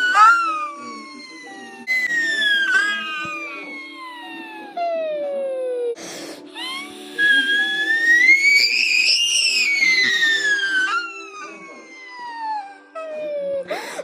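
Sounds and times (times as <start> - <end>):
siren-like wail: 7.4 - 12.7.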